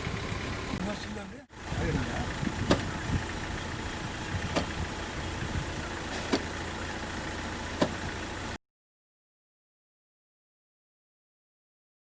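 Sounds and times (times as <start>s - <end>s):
car engine running: 0.0s - 8.6s
sharp clicks or knocks: 4.5s - 4.8s.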